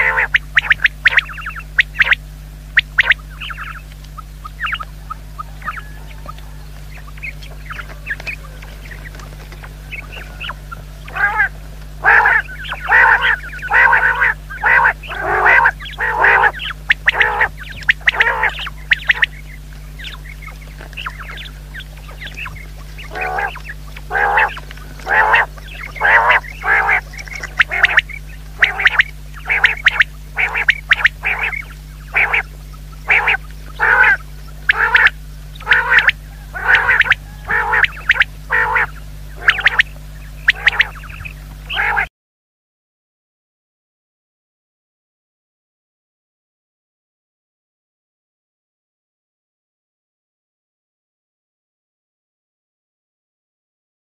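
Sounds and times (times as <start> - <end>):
quail calling: 0.0 - 42.1.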